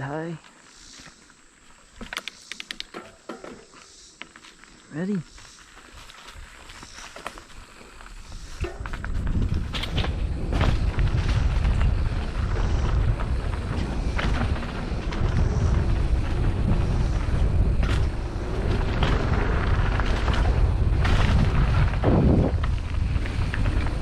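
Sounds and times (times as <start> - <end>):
bike knocks and rattles: 1.9 - 3.8, 8.5 - 24.0
heavy bike jolt: 5.9 - 24.0
wind rumble on microphone: 5.9 - 24.0.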